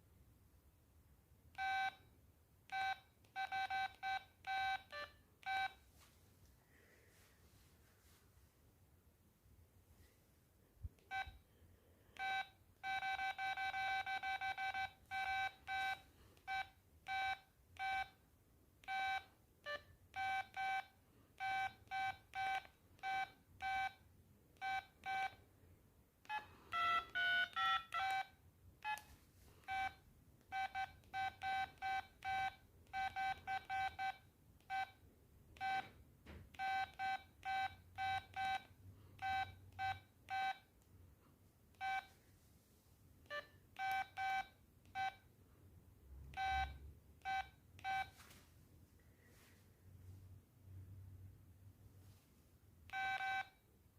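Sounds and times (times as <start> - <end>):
phone ringtone beeps: 1.6 - 2.0, 2.7 - 5.8, 12.2 - 18.1, 18.9 - 24.0, 24.6 - 25.4, 26.3 - 29.1, 29.7 - 34.9, 36.6 - 40.6, 43.3 - 45.2, 46.4 - 48.1, 52.9 - 53.6.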